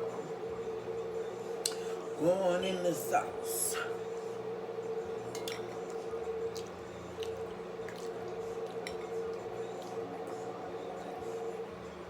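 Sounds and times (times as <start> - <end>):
steady background hum: 0.0 - 12.0
wet squishy chewing: 6.6 - 8.9.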